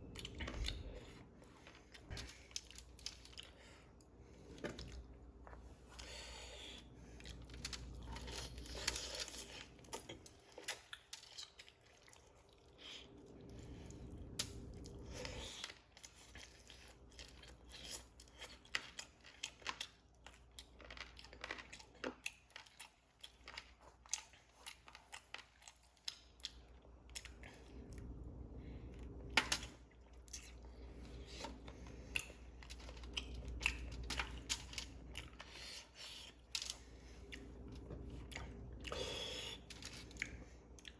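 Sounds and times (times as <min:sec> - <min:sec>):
person chewing crunchy food: 0:00.0 - 0:40.9.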